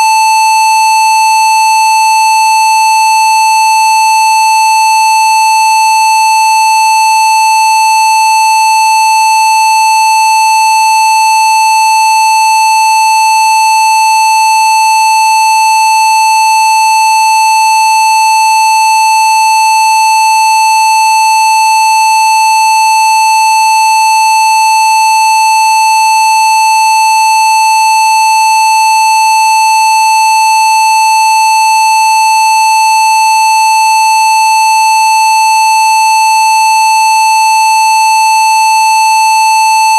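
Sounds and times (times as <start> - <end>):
steady electronic test tone: 0.0 - 1.4.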